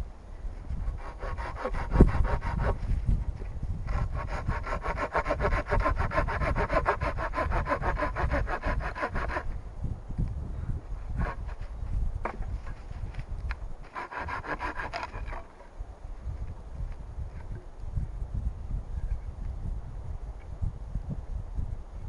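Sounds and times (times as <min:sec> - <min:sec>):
hand saw cutting wood: 0:00.8 - 0:02.9, 0:03.9 - 0:09.5, 0:11.2 - 0:11.6, 0:13.9 - 0:15.6.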